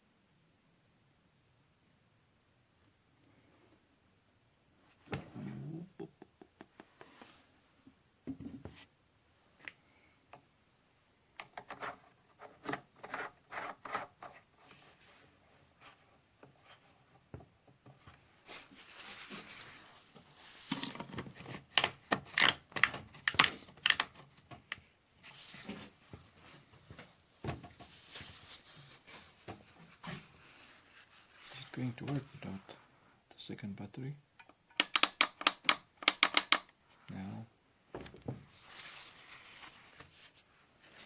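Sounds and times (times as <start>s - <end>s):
clicks and knocks of handling: 11.4s - 14.4s, 20.7s - 24.9s, 34.4s - 36.8s
rustling: 18.1s - 21.6s, 25.2s - 33.0s, 37.9s - 41.0s.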